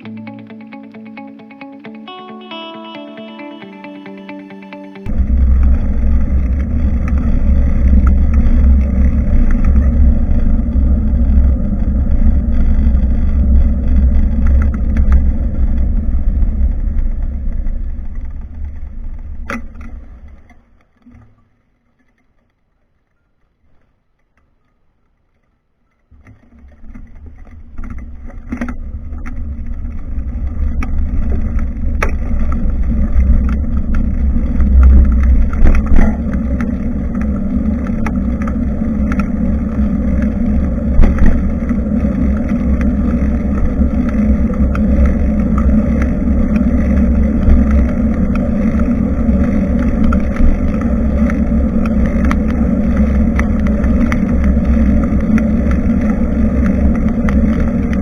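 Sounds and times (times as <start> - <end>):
wind on microphone: 5.1 - 19.5, 28.4 - 58.0
road rumble: 5.1 - 20.4, 26.2 - 58.0.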